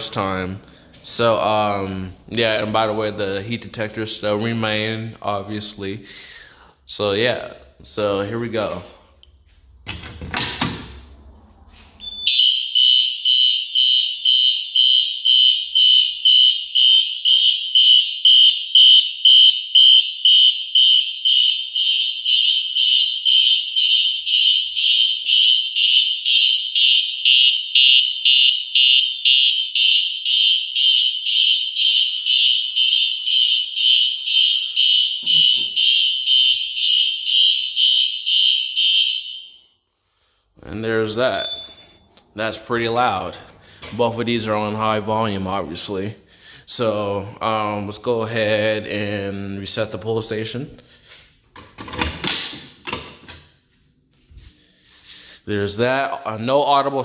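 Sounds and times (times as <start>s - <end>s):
pulsing fire alarm horn: 12.0s - 39.8s.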